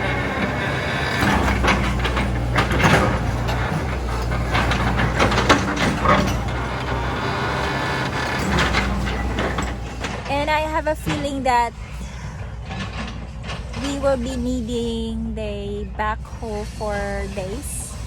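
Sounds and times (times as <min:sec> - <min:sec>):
bucket clanking on rock: 0:00.0 - 0:11.5
diesel engine running under load: 0:00.0 - 0:18.0.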